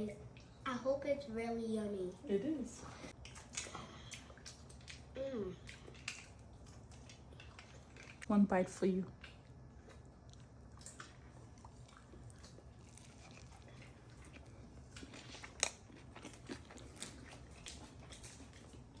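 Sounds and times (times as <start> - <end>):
person chewing a sandwich: 3.0 - 8.3, 9.2 - 19.0.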